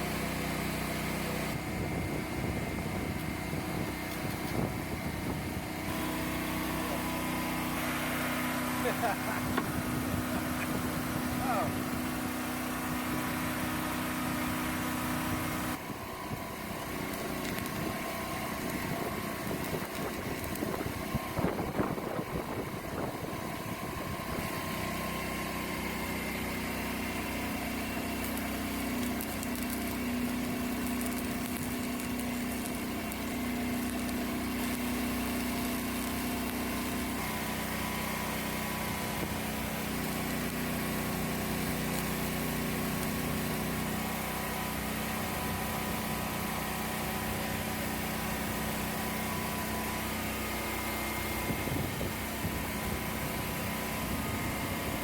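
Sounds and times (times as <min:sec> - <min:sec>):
welder engine running: 0:00.0 - 0:55.0
irregular crackling: 0:16.8 - 0:20.9, 0:28.1 - 0:36.7.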